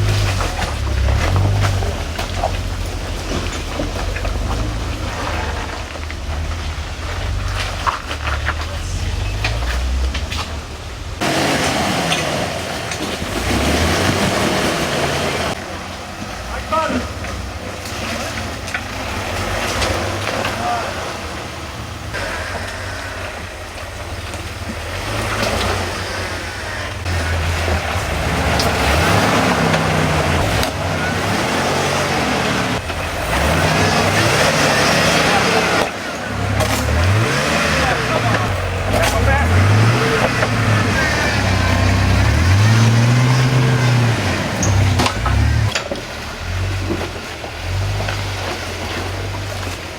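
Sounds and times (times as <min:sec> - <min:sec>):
engine running at low revs: 0:00.0 - 0:49.9
sharp cracks and crunches: 0:27.0 - 0:49.9.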